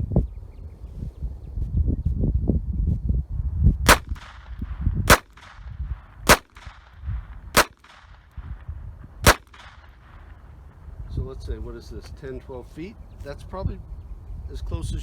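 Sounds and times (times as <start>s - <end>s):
pistol shots with brief ring: 9.3s - 9.8s.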